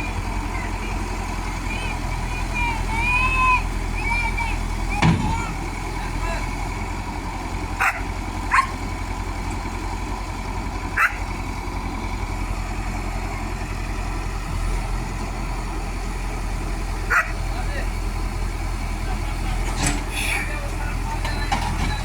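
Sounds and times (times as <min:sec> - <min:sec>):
heavy diesel engine running: 0:00.0 - 0:22.0
dog barking: 0:07.8 - 0:08.8, 0:11.0 - 0:11.2, 0:17.1 - 0:17.4.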